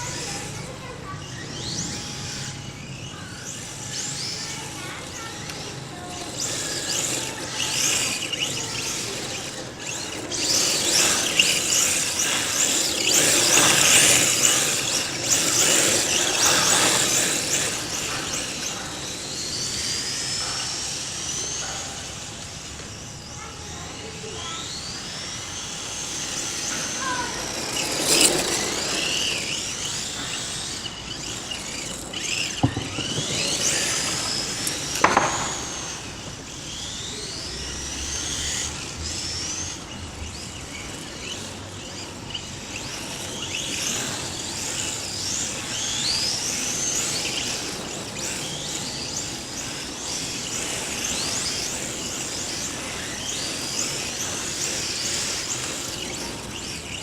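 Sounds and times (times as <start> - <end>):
rc car electric motor whining: 0.0 - 57.0
sharp knocks: 32.6 - 36.4.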